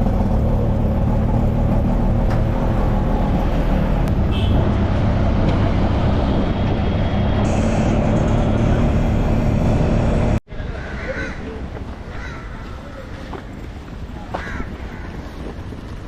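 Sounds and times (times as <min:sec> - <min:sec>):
vehicle engine low rumble: 0:00.0 - 0:10.4.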